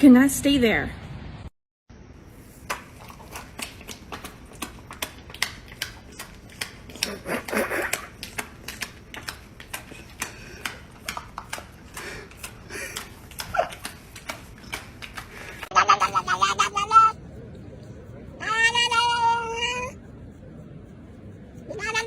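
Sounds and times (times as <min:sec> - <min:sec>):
rapid tapping and clicking: 0:02.7 - 0:15.7.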